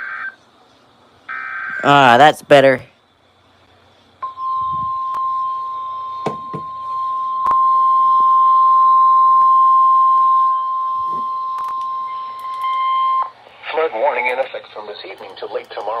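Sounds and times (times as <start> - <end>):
high steady warning tone: 4.2 - 13.4.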